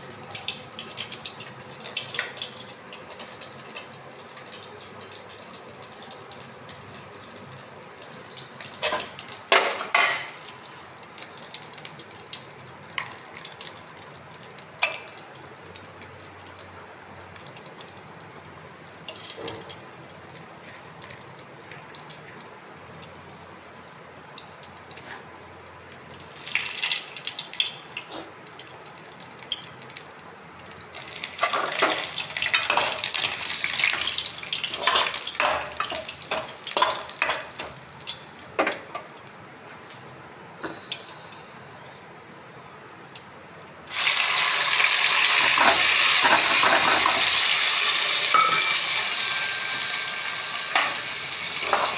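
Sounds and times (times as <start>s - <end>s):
food sizzling in hot oil: 30.9s - 38.2s, 43.9s - 51.9s.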